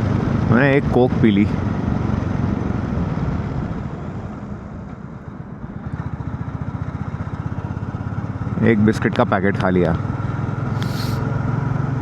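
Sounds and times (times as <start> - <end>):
motorcycle engine running: 4.0 - 12.0.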